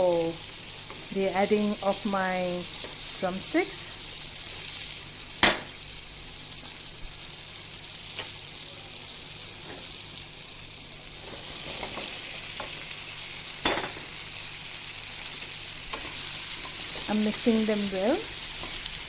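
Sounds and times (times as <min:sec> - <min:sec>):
food sizzling in oil: 0:00.0 - 0:19.0
knock against wok: 0:05.4 - 0:05.7.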